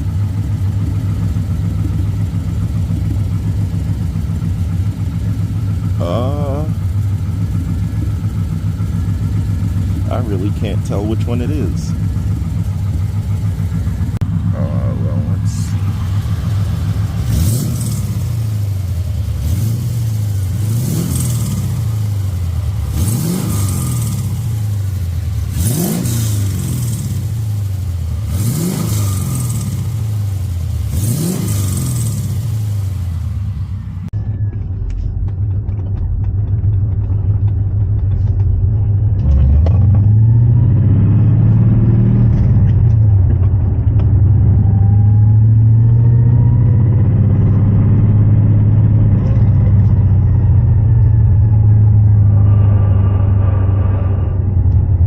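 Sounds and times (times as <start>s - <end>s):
engine idling with throttle blips: 0.0s - 55.0s
steady engine note rising: 0.0s - 55.0s.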